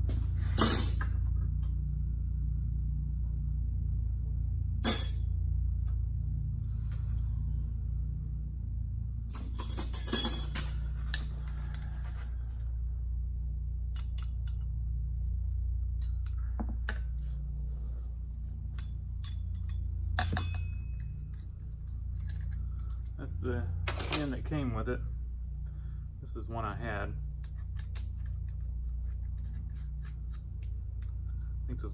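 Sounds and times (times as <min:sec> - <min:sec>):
steady low hum: 0:00.0 - 0:31.9
small metal parts clinking: 0:09.3 - 0:11.9, 0:18.2 - 0:24.3, 0:27.4 - 0:31.4.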